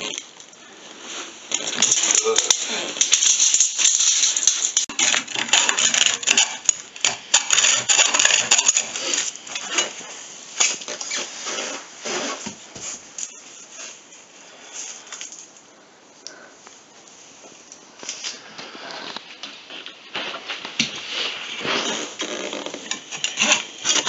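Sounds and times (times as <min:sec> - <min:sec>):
small hard objects clinking: 0:01.5 - 0:10.0.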